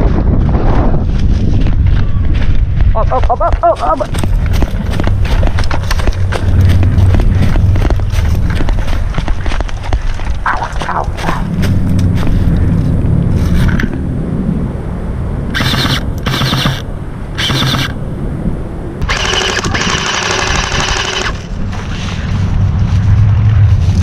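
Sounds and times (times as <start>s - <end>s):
wind buffeting microphone: 0.0s - 24.0s
airsoft gun firing bursts: 15.6s - 16.8s, 17.4s - 17.9s, 19.0s - 21.4s.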